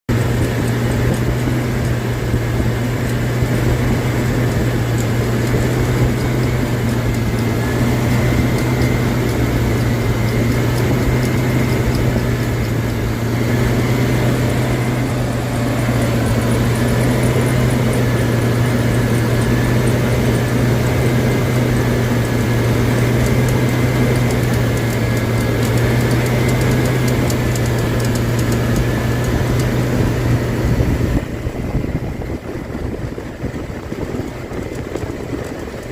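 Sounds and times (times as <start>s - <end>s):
steady low hum: 0.1s - 35.9s.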